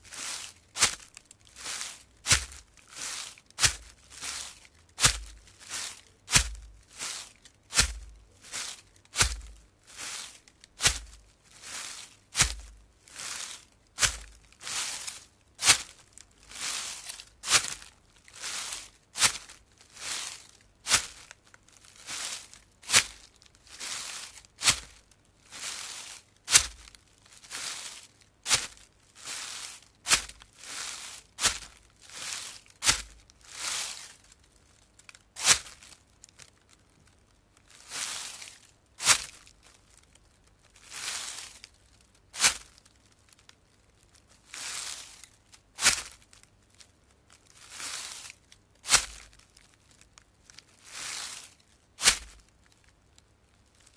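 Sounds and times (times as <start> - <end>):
footsteps on dry leaves: 0.0 - 52.8.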